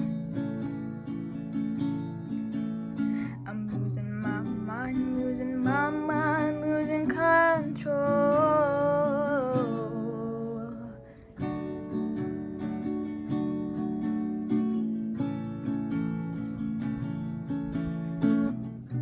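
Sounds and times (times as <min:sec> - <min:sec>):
acoustic guitar strumming chords: 0:00.0 - 0:19.0.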